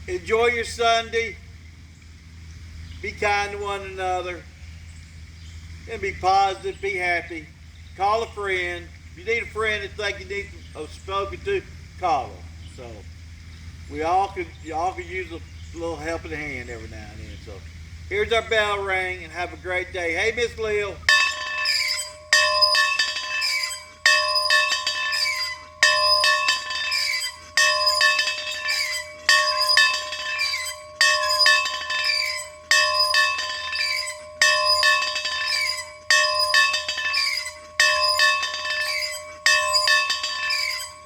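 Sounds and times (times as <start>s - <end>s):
bell ringing: 21.1s - 41.0s.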